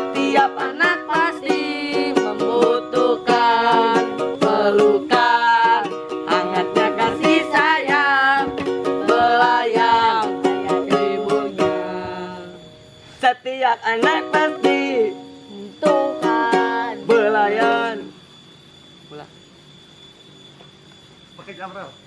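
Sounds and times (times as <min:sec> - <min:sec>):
strummed string instrument: 0:00.0 - 0:11.9
person singing: 0:00.0 - 0:18.1.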